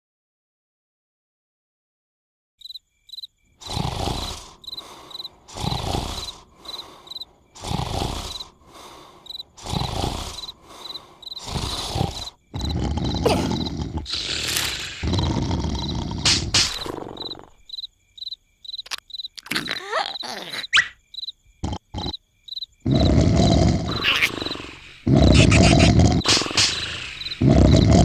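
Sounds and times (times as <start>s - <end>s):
crickets chirping: 2.6s - 28.0s
person snoring: 3.6s - 17.6s, 22.8s - 28.0s.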